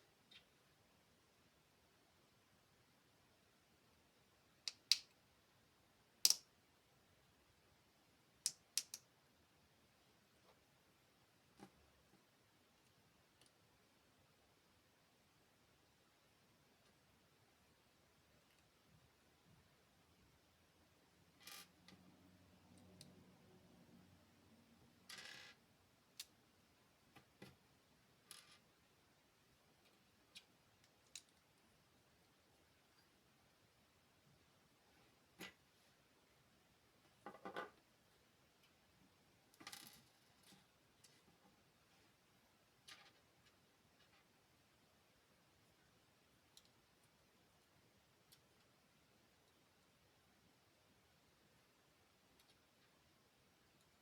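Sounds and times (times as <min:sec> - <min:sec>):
plastic toy bricks clicking together: 0:06.2 - 0:06.4.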